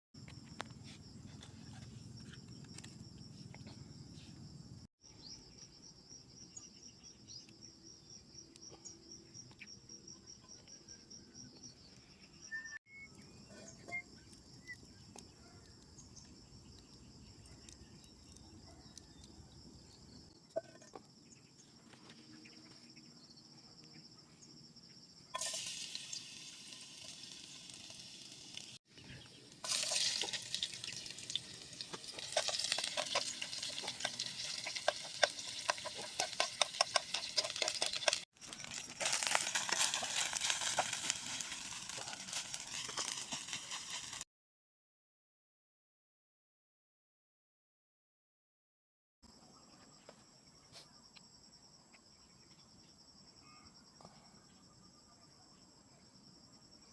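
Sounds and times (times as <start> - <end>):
insects chirping: 0.2 - 44.2, 49.3 - 56.9
food sizzling in a frying pan: 25.4 - 28.8, 29.5 - 44.2.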